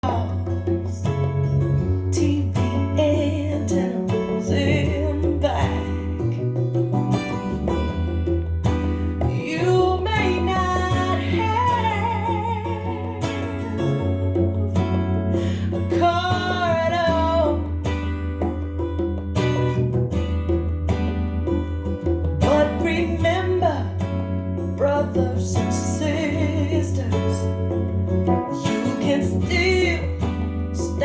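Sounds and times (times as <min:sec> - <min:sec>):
pop song with vocals: 0:00.0 - 0:06.8, 0:09.1 - 0:18.2, 0:22.4 - 0:31.0.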